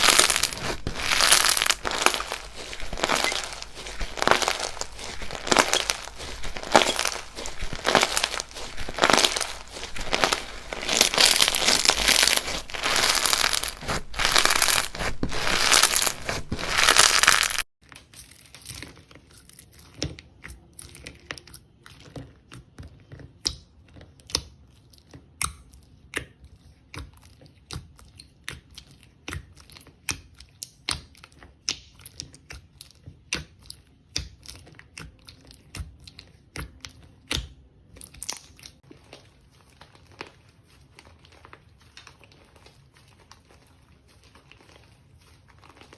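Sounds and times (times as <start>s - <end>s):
slime crinkling crackle: 0.0s - 17.7s, 38.2s - 45.9s.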